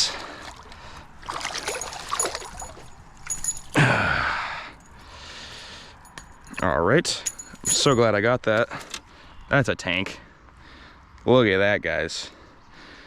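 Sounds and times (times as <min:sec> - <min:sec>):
water trickling and splashing: 0:00.0 - 0:03.8
handling noises: 0:01.3 - 0:04.0, 0:06.0 - 0:09.1
person sighing: 0:03.8 - 0:04.8.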